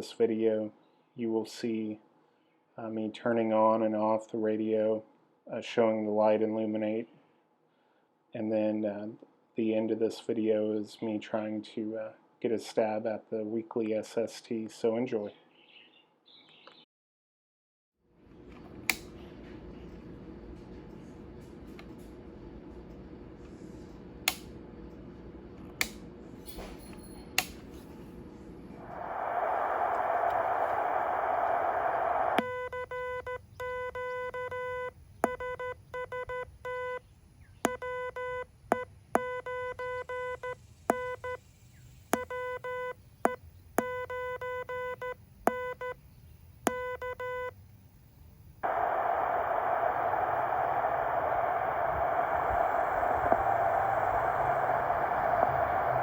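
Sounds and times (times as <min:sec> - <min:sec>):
radio receiver hiss: 0:28.8 - 0:32.5, 0:48.6 - 0:56.0
morse code sidetone beeps: 0:32.4 - 0:37.0, 0:37.7 - 0:41.4, 0:42.2 - 0:46.0, 0:46.7 - 0:47.5
sharp clicks: 0:48.7 - 0:56.0.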